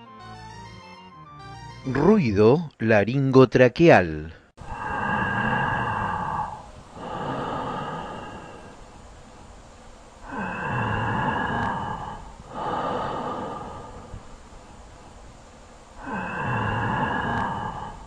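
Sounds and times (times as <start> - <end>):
tracheal breath sounds: 4.5 - 18.0.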